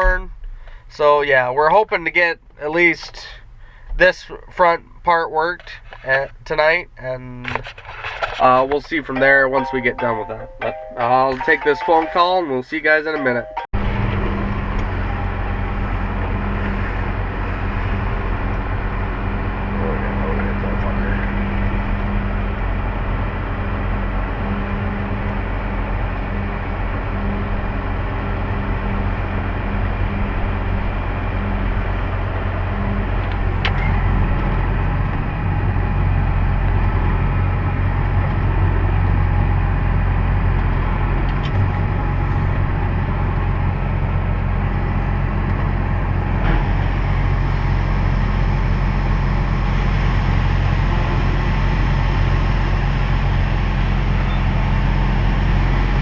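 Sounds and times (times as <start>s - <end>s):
farm machine engine running: 8.4s - 56.0s
steady hum: 13.2s - 40.4s.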